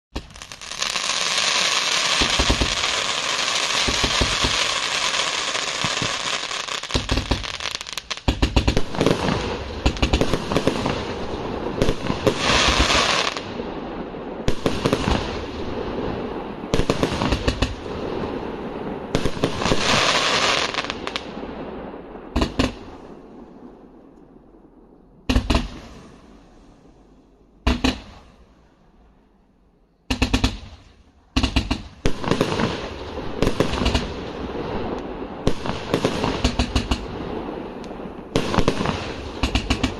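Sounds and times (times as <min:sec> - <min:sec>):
fireworks whistling: 0:00.1 - 0:13.6, 0:14.4 - 0:21.6, 0:30.1 - 0:39.9
fireworks launch bangs: 0:00.1 - 0:13.7, 0:14.4 - 0:23.2, 0:25.3 - 0:26.2, 0:27.6 - 0:28.4, 0:30.1 - 0:39.9.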